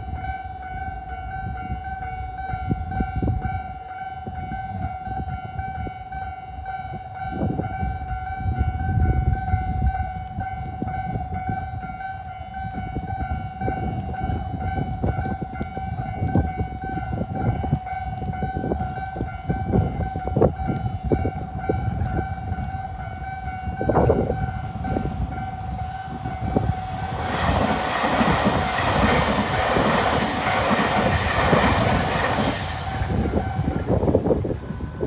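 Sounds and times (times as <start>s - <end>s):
level crossing warning bells: 0.0s - 35.0s
train rushing over rails: 12.7s - 35.0s.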